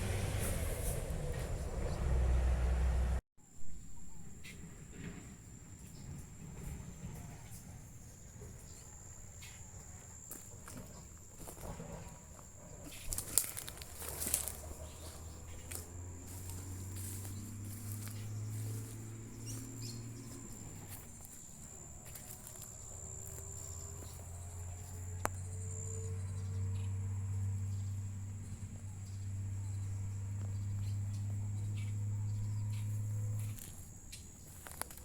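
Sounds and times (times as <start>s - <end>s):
clicks and rustles: 12.8s - 15.9s, 33.5s - 35.0s.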